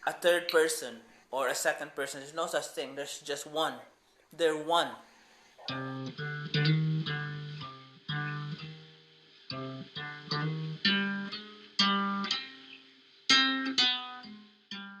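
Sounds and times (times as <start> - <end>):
guitar chords plucked: 5.6 - 15.0.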